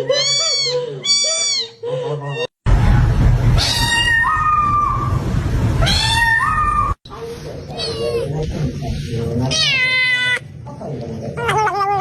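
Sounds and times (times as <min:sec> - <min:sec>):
loud low rumble: 0:02.6 - 0:09.4
kitten meowing: 0:03.6 - 0:05.0.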